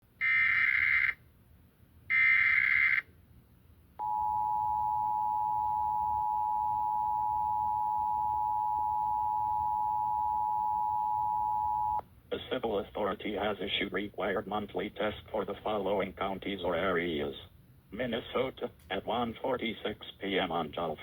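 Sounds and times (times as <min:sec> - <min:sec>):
two-tone attention signal: 0:04.0 - 0:12.0.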